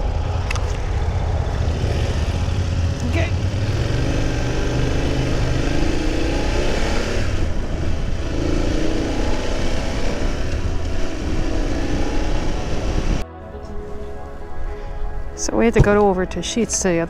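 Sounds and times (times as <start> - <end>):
motorcycle engine accelerating: 0.0 - 13.2
wind noise: 0.0 - 16.8.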